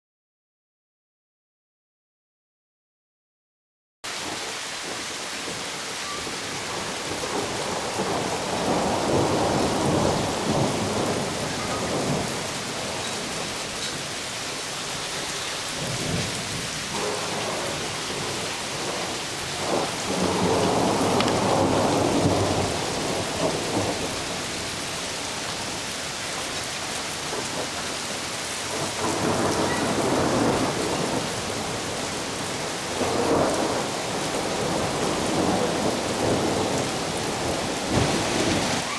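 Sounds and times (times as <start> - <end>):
heavy rain: 4.0 - 38.9
rolling thunder: 6.2 - 14.1, 15.7 - 25.8, 28.6 - 38.9.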